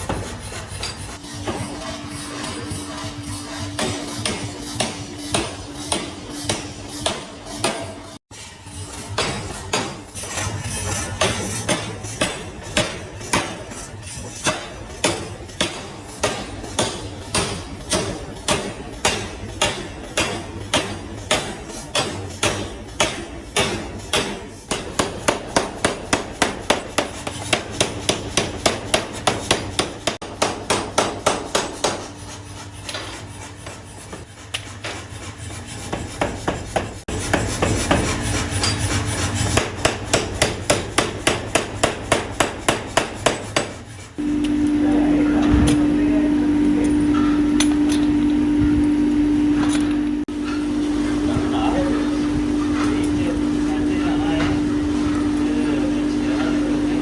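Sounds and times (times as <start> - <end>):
hammer blows forging metal: 0.0 - 8.2, 9.0 - 10.5, 11.1 - 32.3, 35.9 - 48.9
low machine hum: 44.2 - 57.0.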